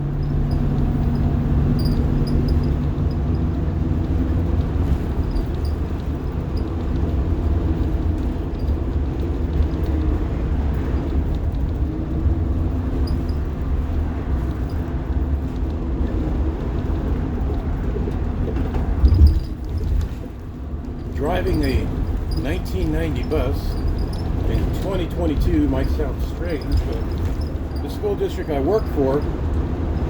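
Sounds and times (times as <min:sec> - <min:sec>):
bus diesel engine droning: 0:00.0 - 0:30.0
road noise: 0:00.0 - 0:30.0.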